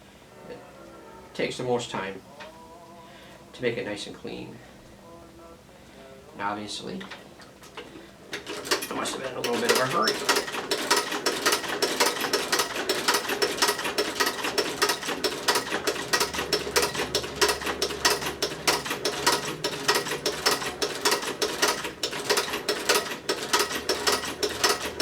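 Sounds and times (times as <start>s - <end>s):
sewing machine stitching: 8.3s - 25.0s.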